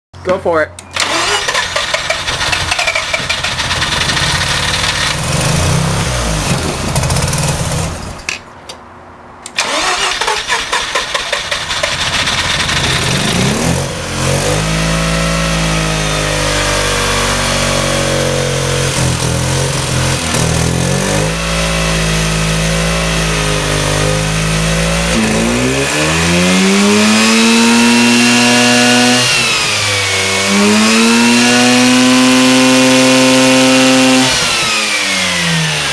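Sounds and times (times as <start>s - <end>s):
car starter cranking: 1.0s - 5.3s, 9.4s - 13.4s
car engine running and revving: 2.0s - 8.2s, 11.4s - 35.9s.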